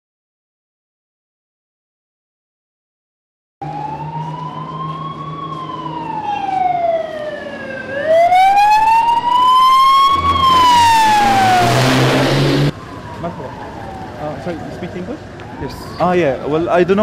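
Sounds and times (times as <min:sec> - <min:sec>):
ambulance siren wailing: 0:03.6 - 0:17.0
rush of noise: 0:08.4 - 0:12.8
vehicle engine running: 0:10.0 - 0:12.7.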